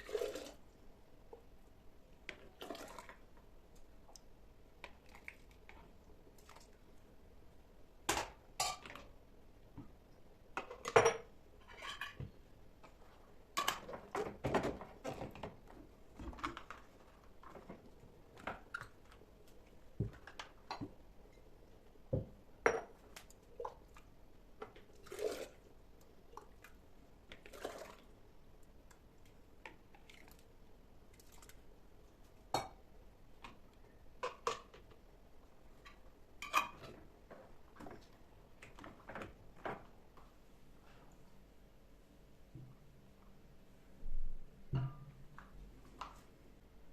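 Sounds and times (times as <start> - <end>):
faint steady hum: 0.0 - 46.9
dishes and utensils clinking: 8.6 - 9.0.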